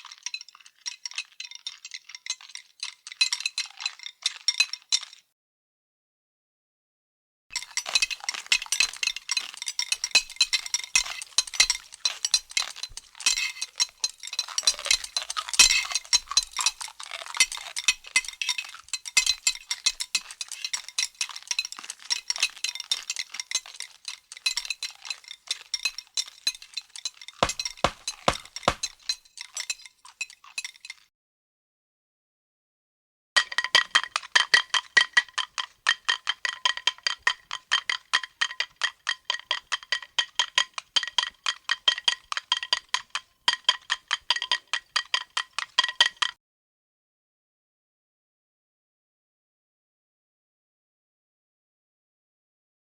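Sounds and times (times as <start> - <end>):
dishes and utensils clattering: 27.4 - 29.0
ringing clinks: 27.4 - 29.0.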